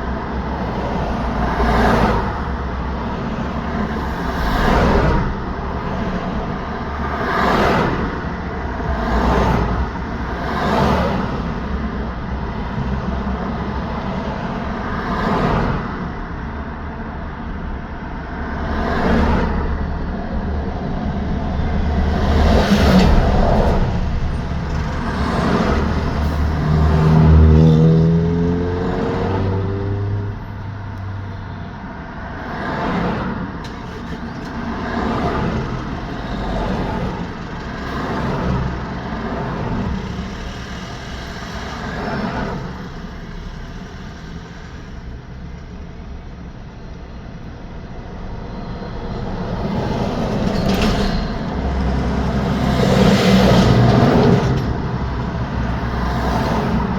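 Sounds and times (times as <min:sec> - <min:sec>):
vehicles passing: 0:00.0 - 0:56.9
tyre and road noise: 0:18.4 - 0:56.9
loud vehicle passing: 0:21.1 - 0:31.5, 0:51.4 - 0:56.9.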